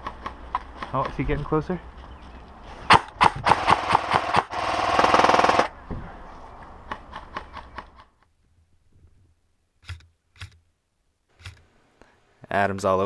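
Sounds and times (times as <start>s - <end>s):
airsoft guns firing: 2.9s - 5.7s.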